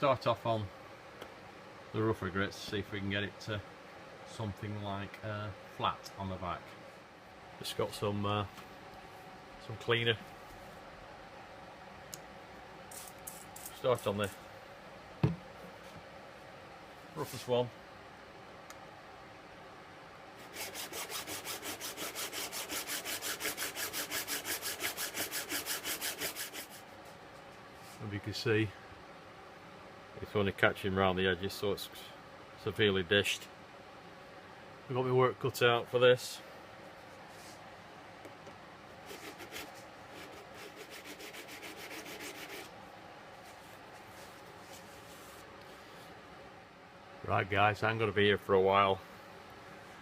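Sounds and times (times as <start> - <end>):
chisel scrubbing on sharpening stone: 20.4 - 26.8, 39.1 - 42.7.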